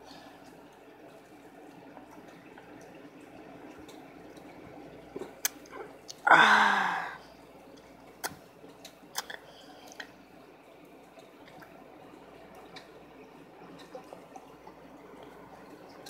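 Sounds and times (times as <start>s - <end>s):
mouth and lip clicks: 5.4s - 6.2s, 8.2s - 10.1s.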